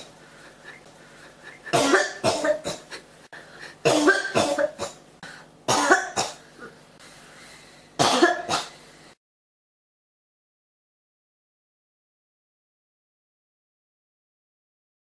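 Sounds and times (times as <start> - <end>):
person coughing: 1.5 - 5.0, 5.7 - 6.8, 8.0 - 8.8.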